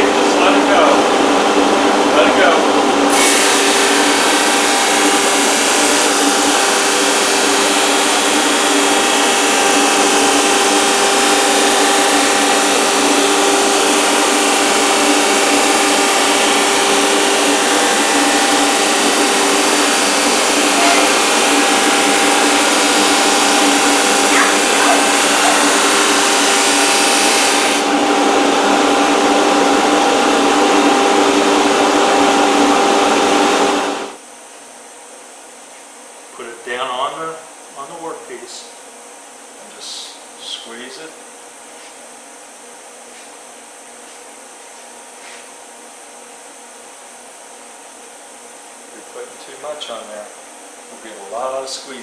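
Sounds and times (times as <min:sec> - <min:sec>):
electric sander on wood: 0:03.0 - 0:34.2.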